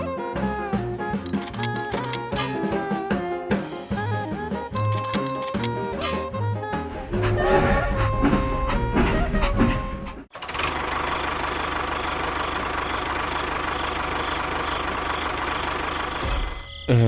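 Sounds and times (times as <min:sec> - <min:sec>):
engine idling: 0:06.9 - 0:16.6.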